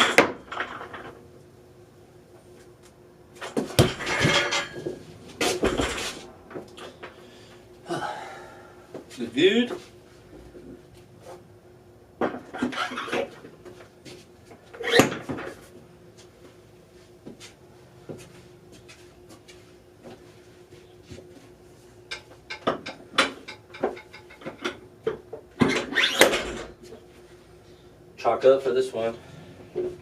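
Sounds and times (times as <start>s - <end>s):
faint steady hum: 0.0s - 30.0s
weight plates knocking and clattering: 3.8s - 5.0s.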